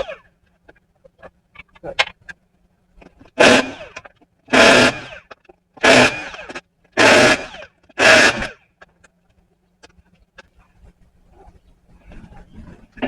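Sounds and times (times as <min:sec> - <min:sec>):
impact wrench bursts: 0:03.4 - 0:08.6.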